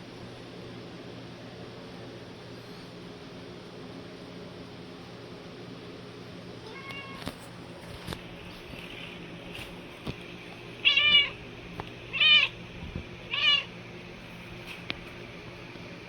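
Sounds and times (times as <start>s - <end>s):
cat meowing: 6.6s - 7.3s, 10.8s - 11.4s, 12.1s - 12.6s, 13.3s - 13.7s.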